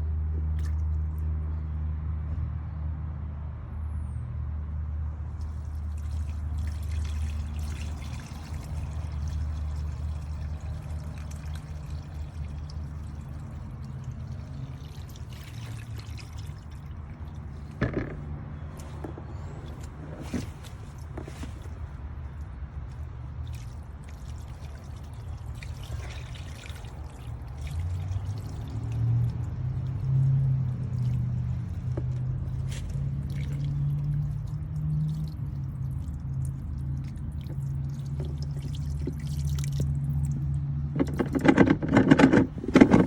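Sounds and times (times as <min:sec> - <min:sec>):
water sloshing and gurgling: 0:00.4 - 0:01.3, 0:05.3 - 0:43.0.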